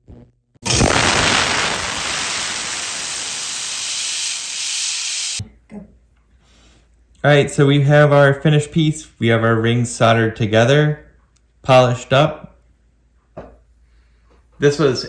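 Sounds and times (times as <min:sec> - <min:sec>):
steam cleaner jet hissing: 0:00.6 - 0:05.4.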